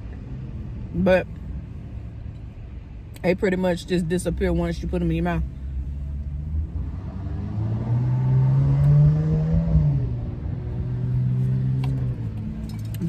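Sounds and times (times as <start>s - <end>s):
car engine revving: 4.3s - 13.0s.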